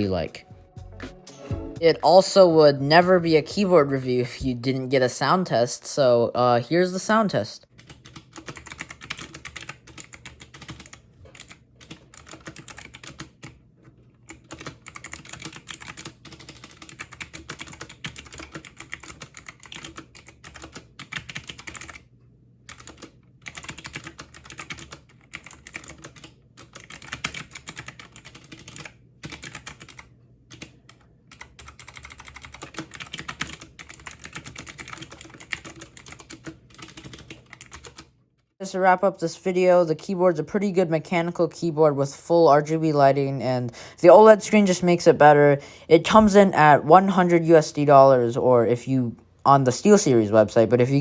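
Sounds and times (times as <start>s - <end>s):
mechanical keyboard typing: 7.8s - 13.6s, 14.2s - 22.1s, 22.7s - 38.1s.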